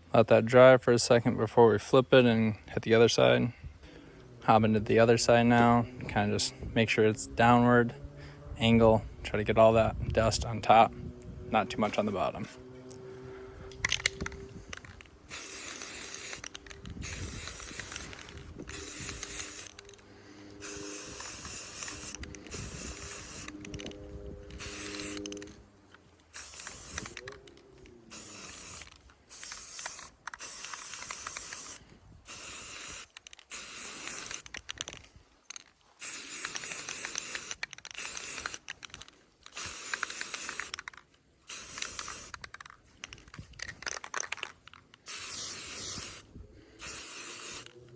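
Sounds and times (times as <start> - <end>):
spray can hissing bursts: 13.8 - 20.0, 20.6 - 23.9, 24.5 - 25.6, 26.3 - 27.4, 28.1 - 34.8, 36.0 - 42.6, 45.0 - 47.9.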